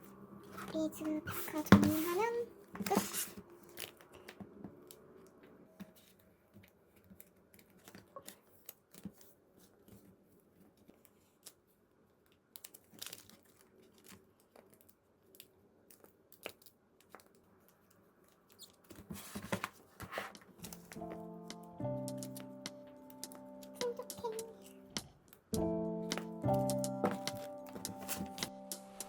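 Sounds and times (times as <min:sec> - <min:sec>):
plastic packaging crinkling: 0:12.3 - 0:19.9.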